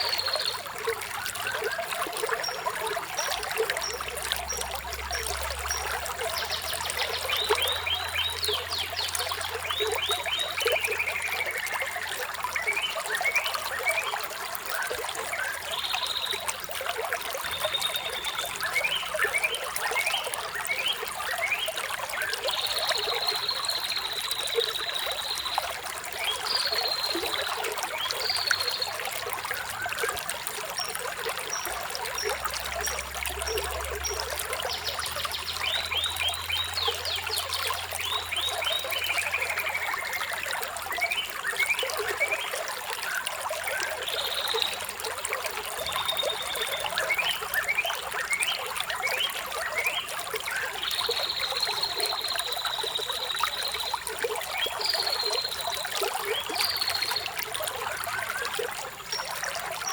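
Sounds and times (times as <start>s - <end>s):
water trickling: 0.0s - 59.9s
birds singing: 1.4s - 14.2s, 30.7s - 44.8s, 45.8s - 59.9s.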